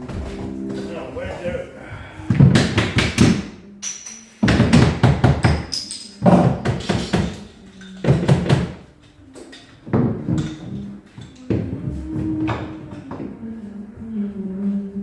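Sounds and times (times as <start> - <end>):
hammer blows on wood: 2.3 - 8.8.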